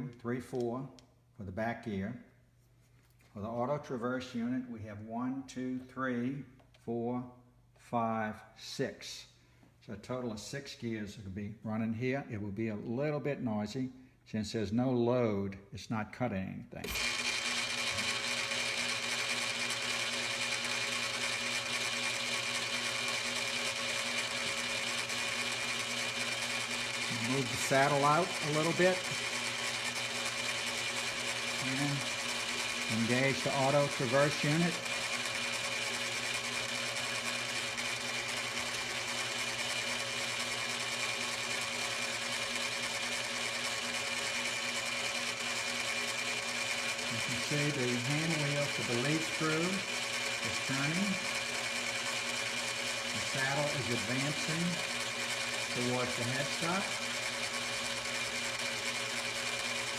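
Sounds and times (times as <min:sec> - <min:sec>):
lathe motor humming: 0:16.8 - 0:59.9.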